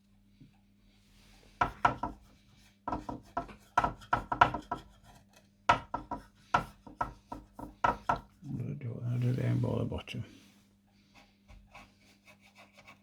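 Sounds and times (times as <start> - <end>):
knocking and scraping on wood: 1.6 - 8.3.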